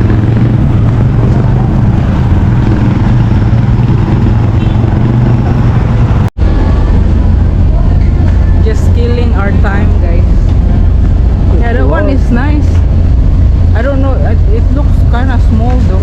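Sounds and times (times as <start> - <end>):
vehicle engines rumbling: 0.0 - 16.0.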